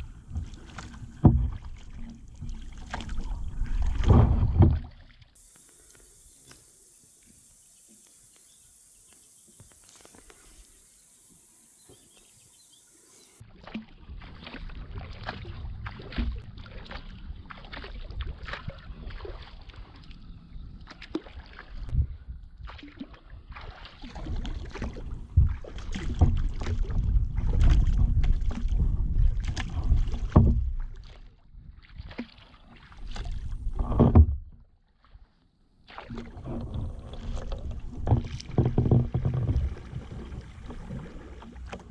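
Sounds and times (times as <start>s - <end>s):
paddle splashes: 0.0s - 20.1s, 22.6s - 34.2s, 35.0s - 41.9s
paddle knocking against hull: 0.3s - 5.7s, 33.8s - 34.4s, 37.6s - 41.9s
steady high hiss: 5.4s - 13.4s.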